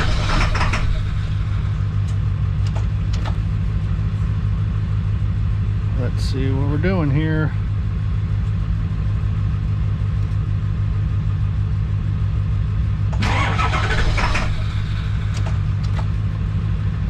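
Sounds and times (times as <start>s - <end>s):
diesel engine cranking: 0.0s - 3.6s, 13.0s - 17.0s.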